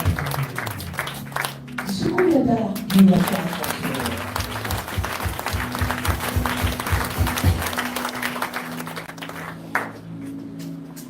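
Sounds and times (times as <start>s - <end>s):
music with fast drum beat: 0.0s - 1.0s, 3.2s - 8.4s
people clapping along: 0.0s - 10.3s.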